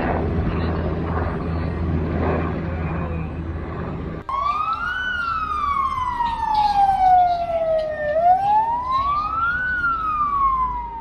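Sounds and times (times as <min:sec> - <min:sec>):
emergency siren wailing: 0:04.2 - 0:11.0.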